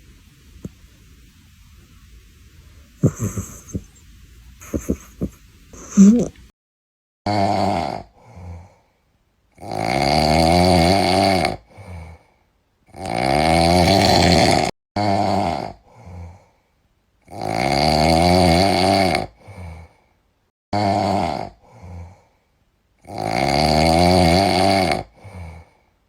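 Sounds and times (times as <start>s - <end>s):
cat snoring: 3.0s - 3.9s, 7.3s - 8.8s, 9.6s - 12.2s, 12.9s - 16.4s, 17.3s - 19.9s, 20.8s - 22.2s, 23.0s - 25.8s
faint breath: 8.2s - 9.2s, 15.8s - 16.9s, 21.6s - 22.6s, 25.2s - 26.0s.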